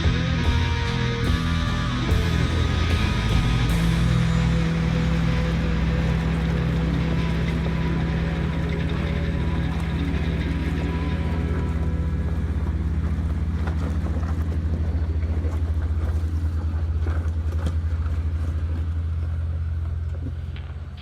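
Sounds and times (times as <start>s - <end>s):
low engine-like drone: 0.0s - 21.0s
small clicks and crunches on rocks: 12.0s - 21.0s.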